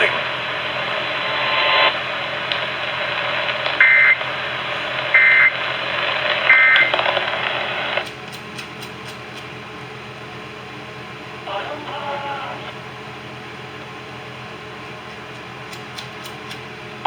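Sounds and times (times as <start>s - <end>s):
radio reception hiss: 0.0s - 8.1s, 11.4s - 12.8s
two-tone data bursts: 3.8s - 4.2s, 5.1s - 5.6s, 6.5s - 6.9s.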